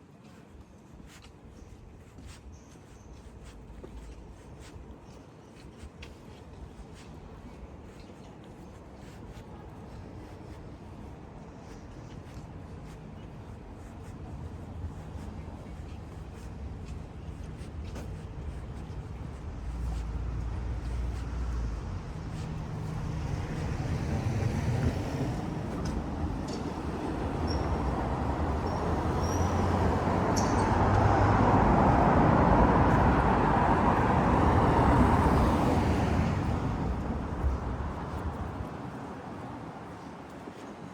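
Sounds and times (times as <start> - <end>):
vehicle passing by: 20.0 - 38.7.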